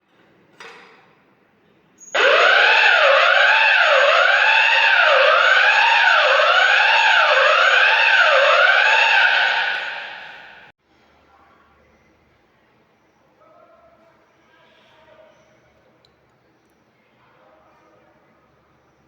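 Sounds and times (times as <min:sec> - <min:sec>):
fire alarm siren rising and falling: 0:02.1 - 0:10.7.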